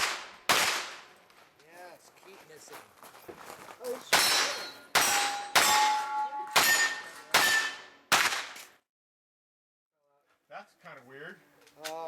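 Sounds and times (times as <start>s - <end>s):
gunshots: 0.0s - 1.1s, 4.1s - 8.7s
steel target ringing: 4.2s - 8.1s.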